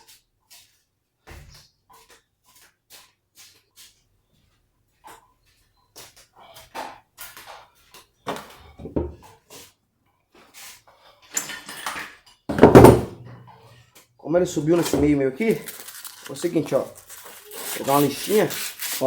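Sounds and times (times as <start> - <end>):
heavy knock: 12.5 - 13.4.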